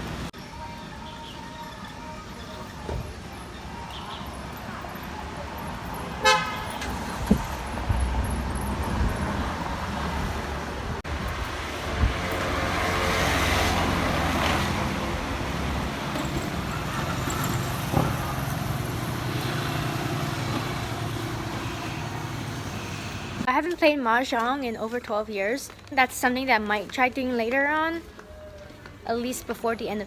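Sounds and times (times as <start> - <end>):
traffic passing: 0.0 - 23.8
vehicle horn toot: 6.2 - 6.9.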